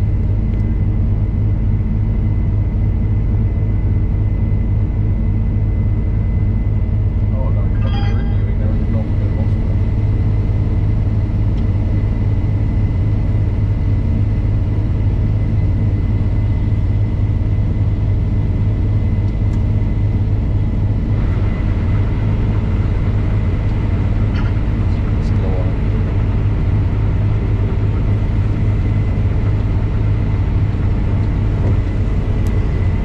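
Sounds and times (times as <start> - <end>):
combine harvester rumble: 0.0 - 33.0
thin high whine: 7.5 - 9.8.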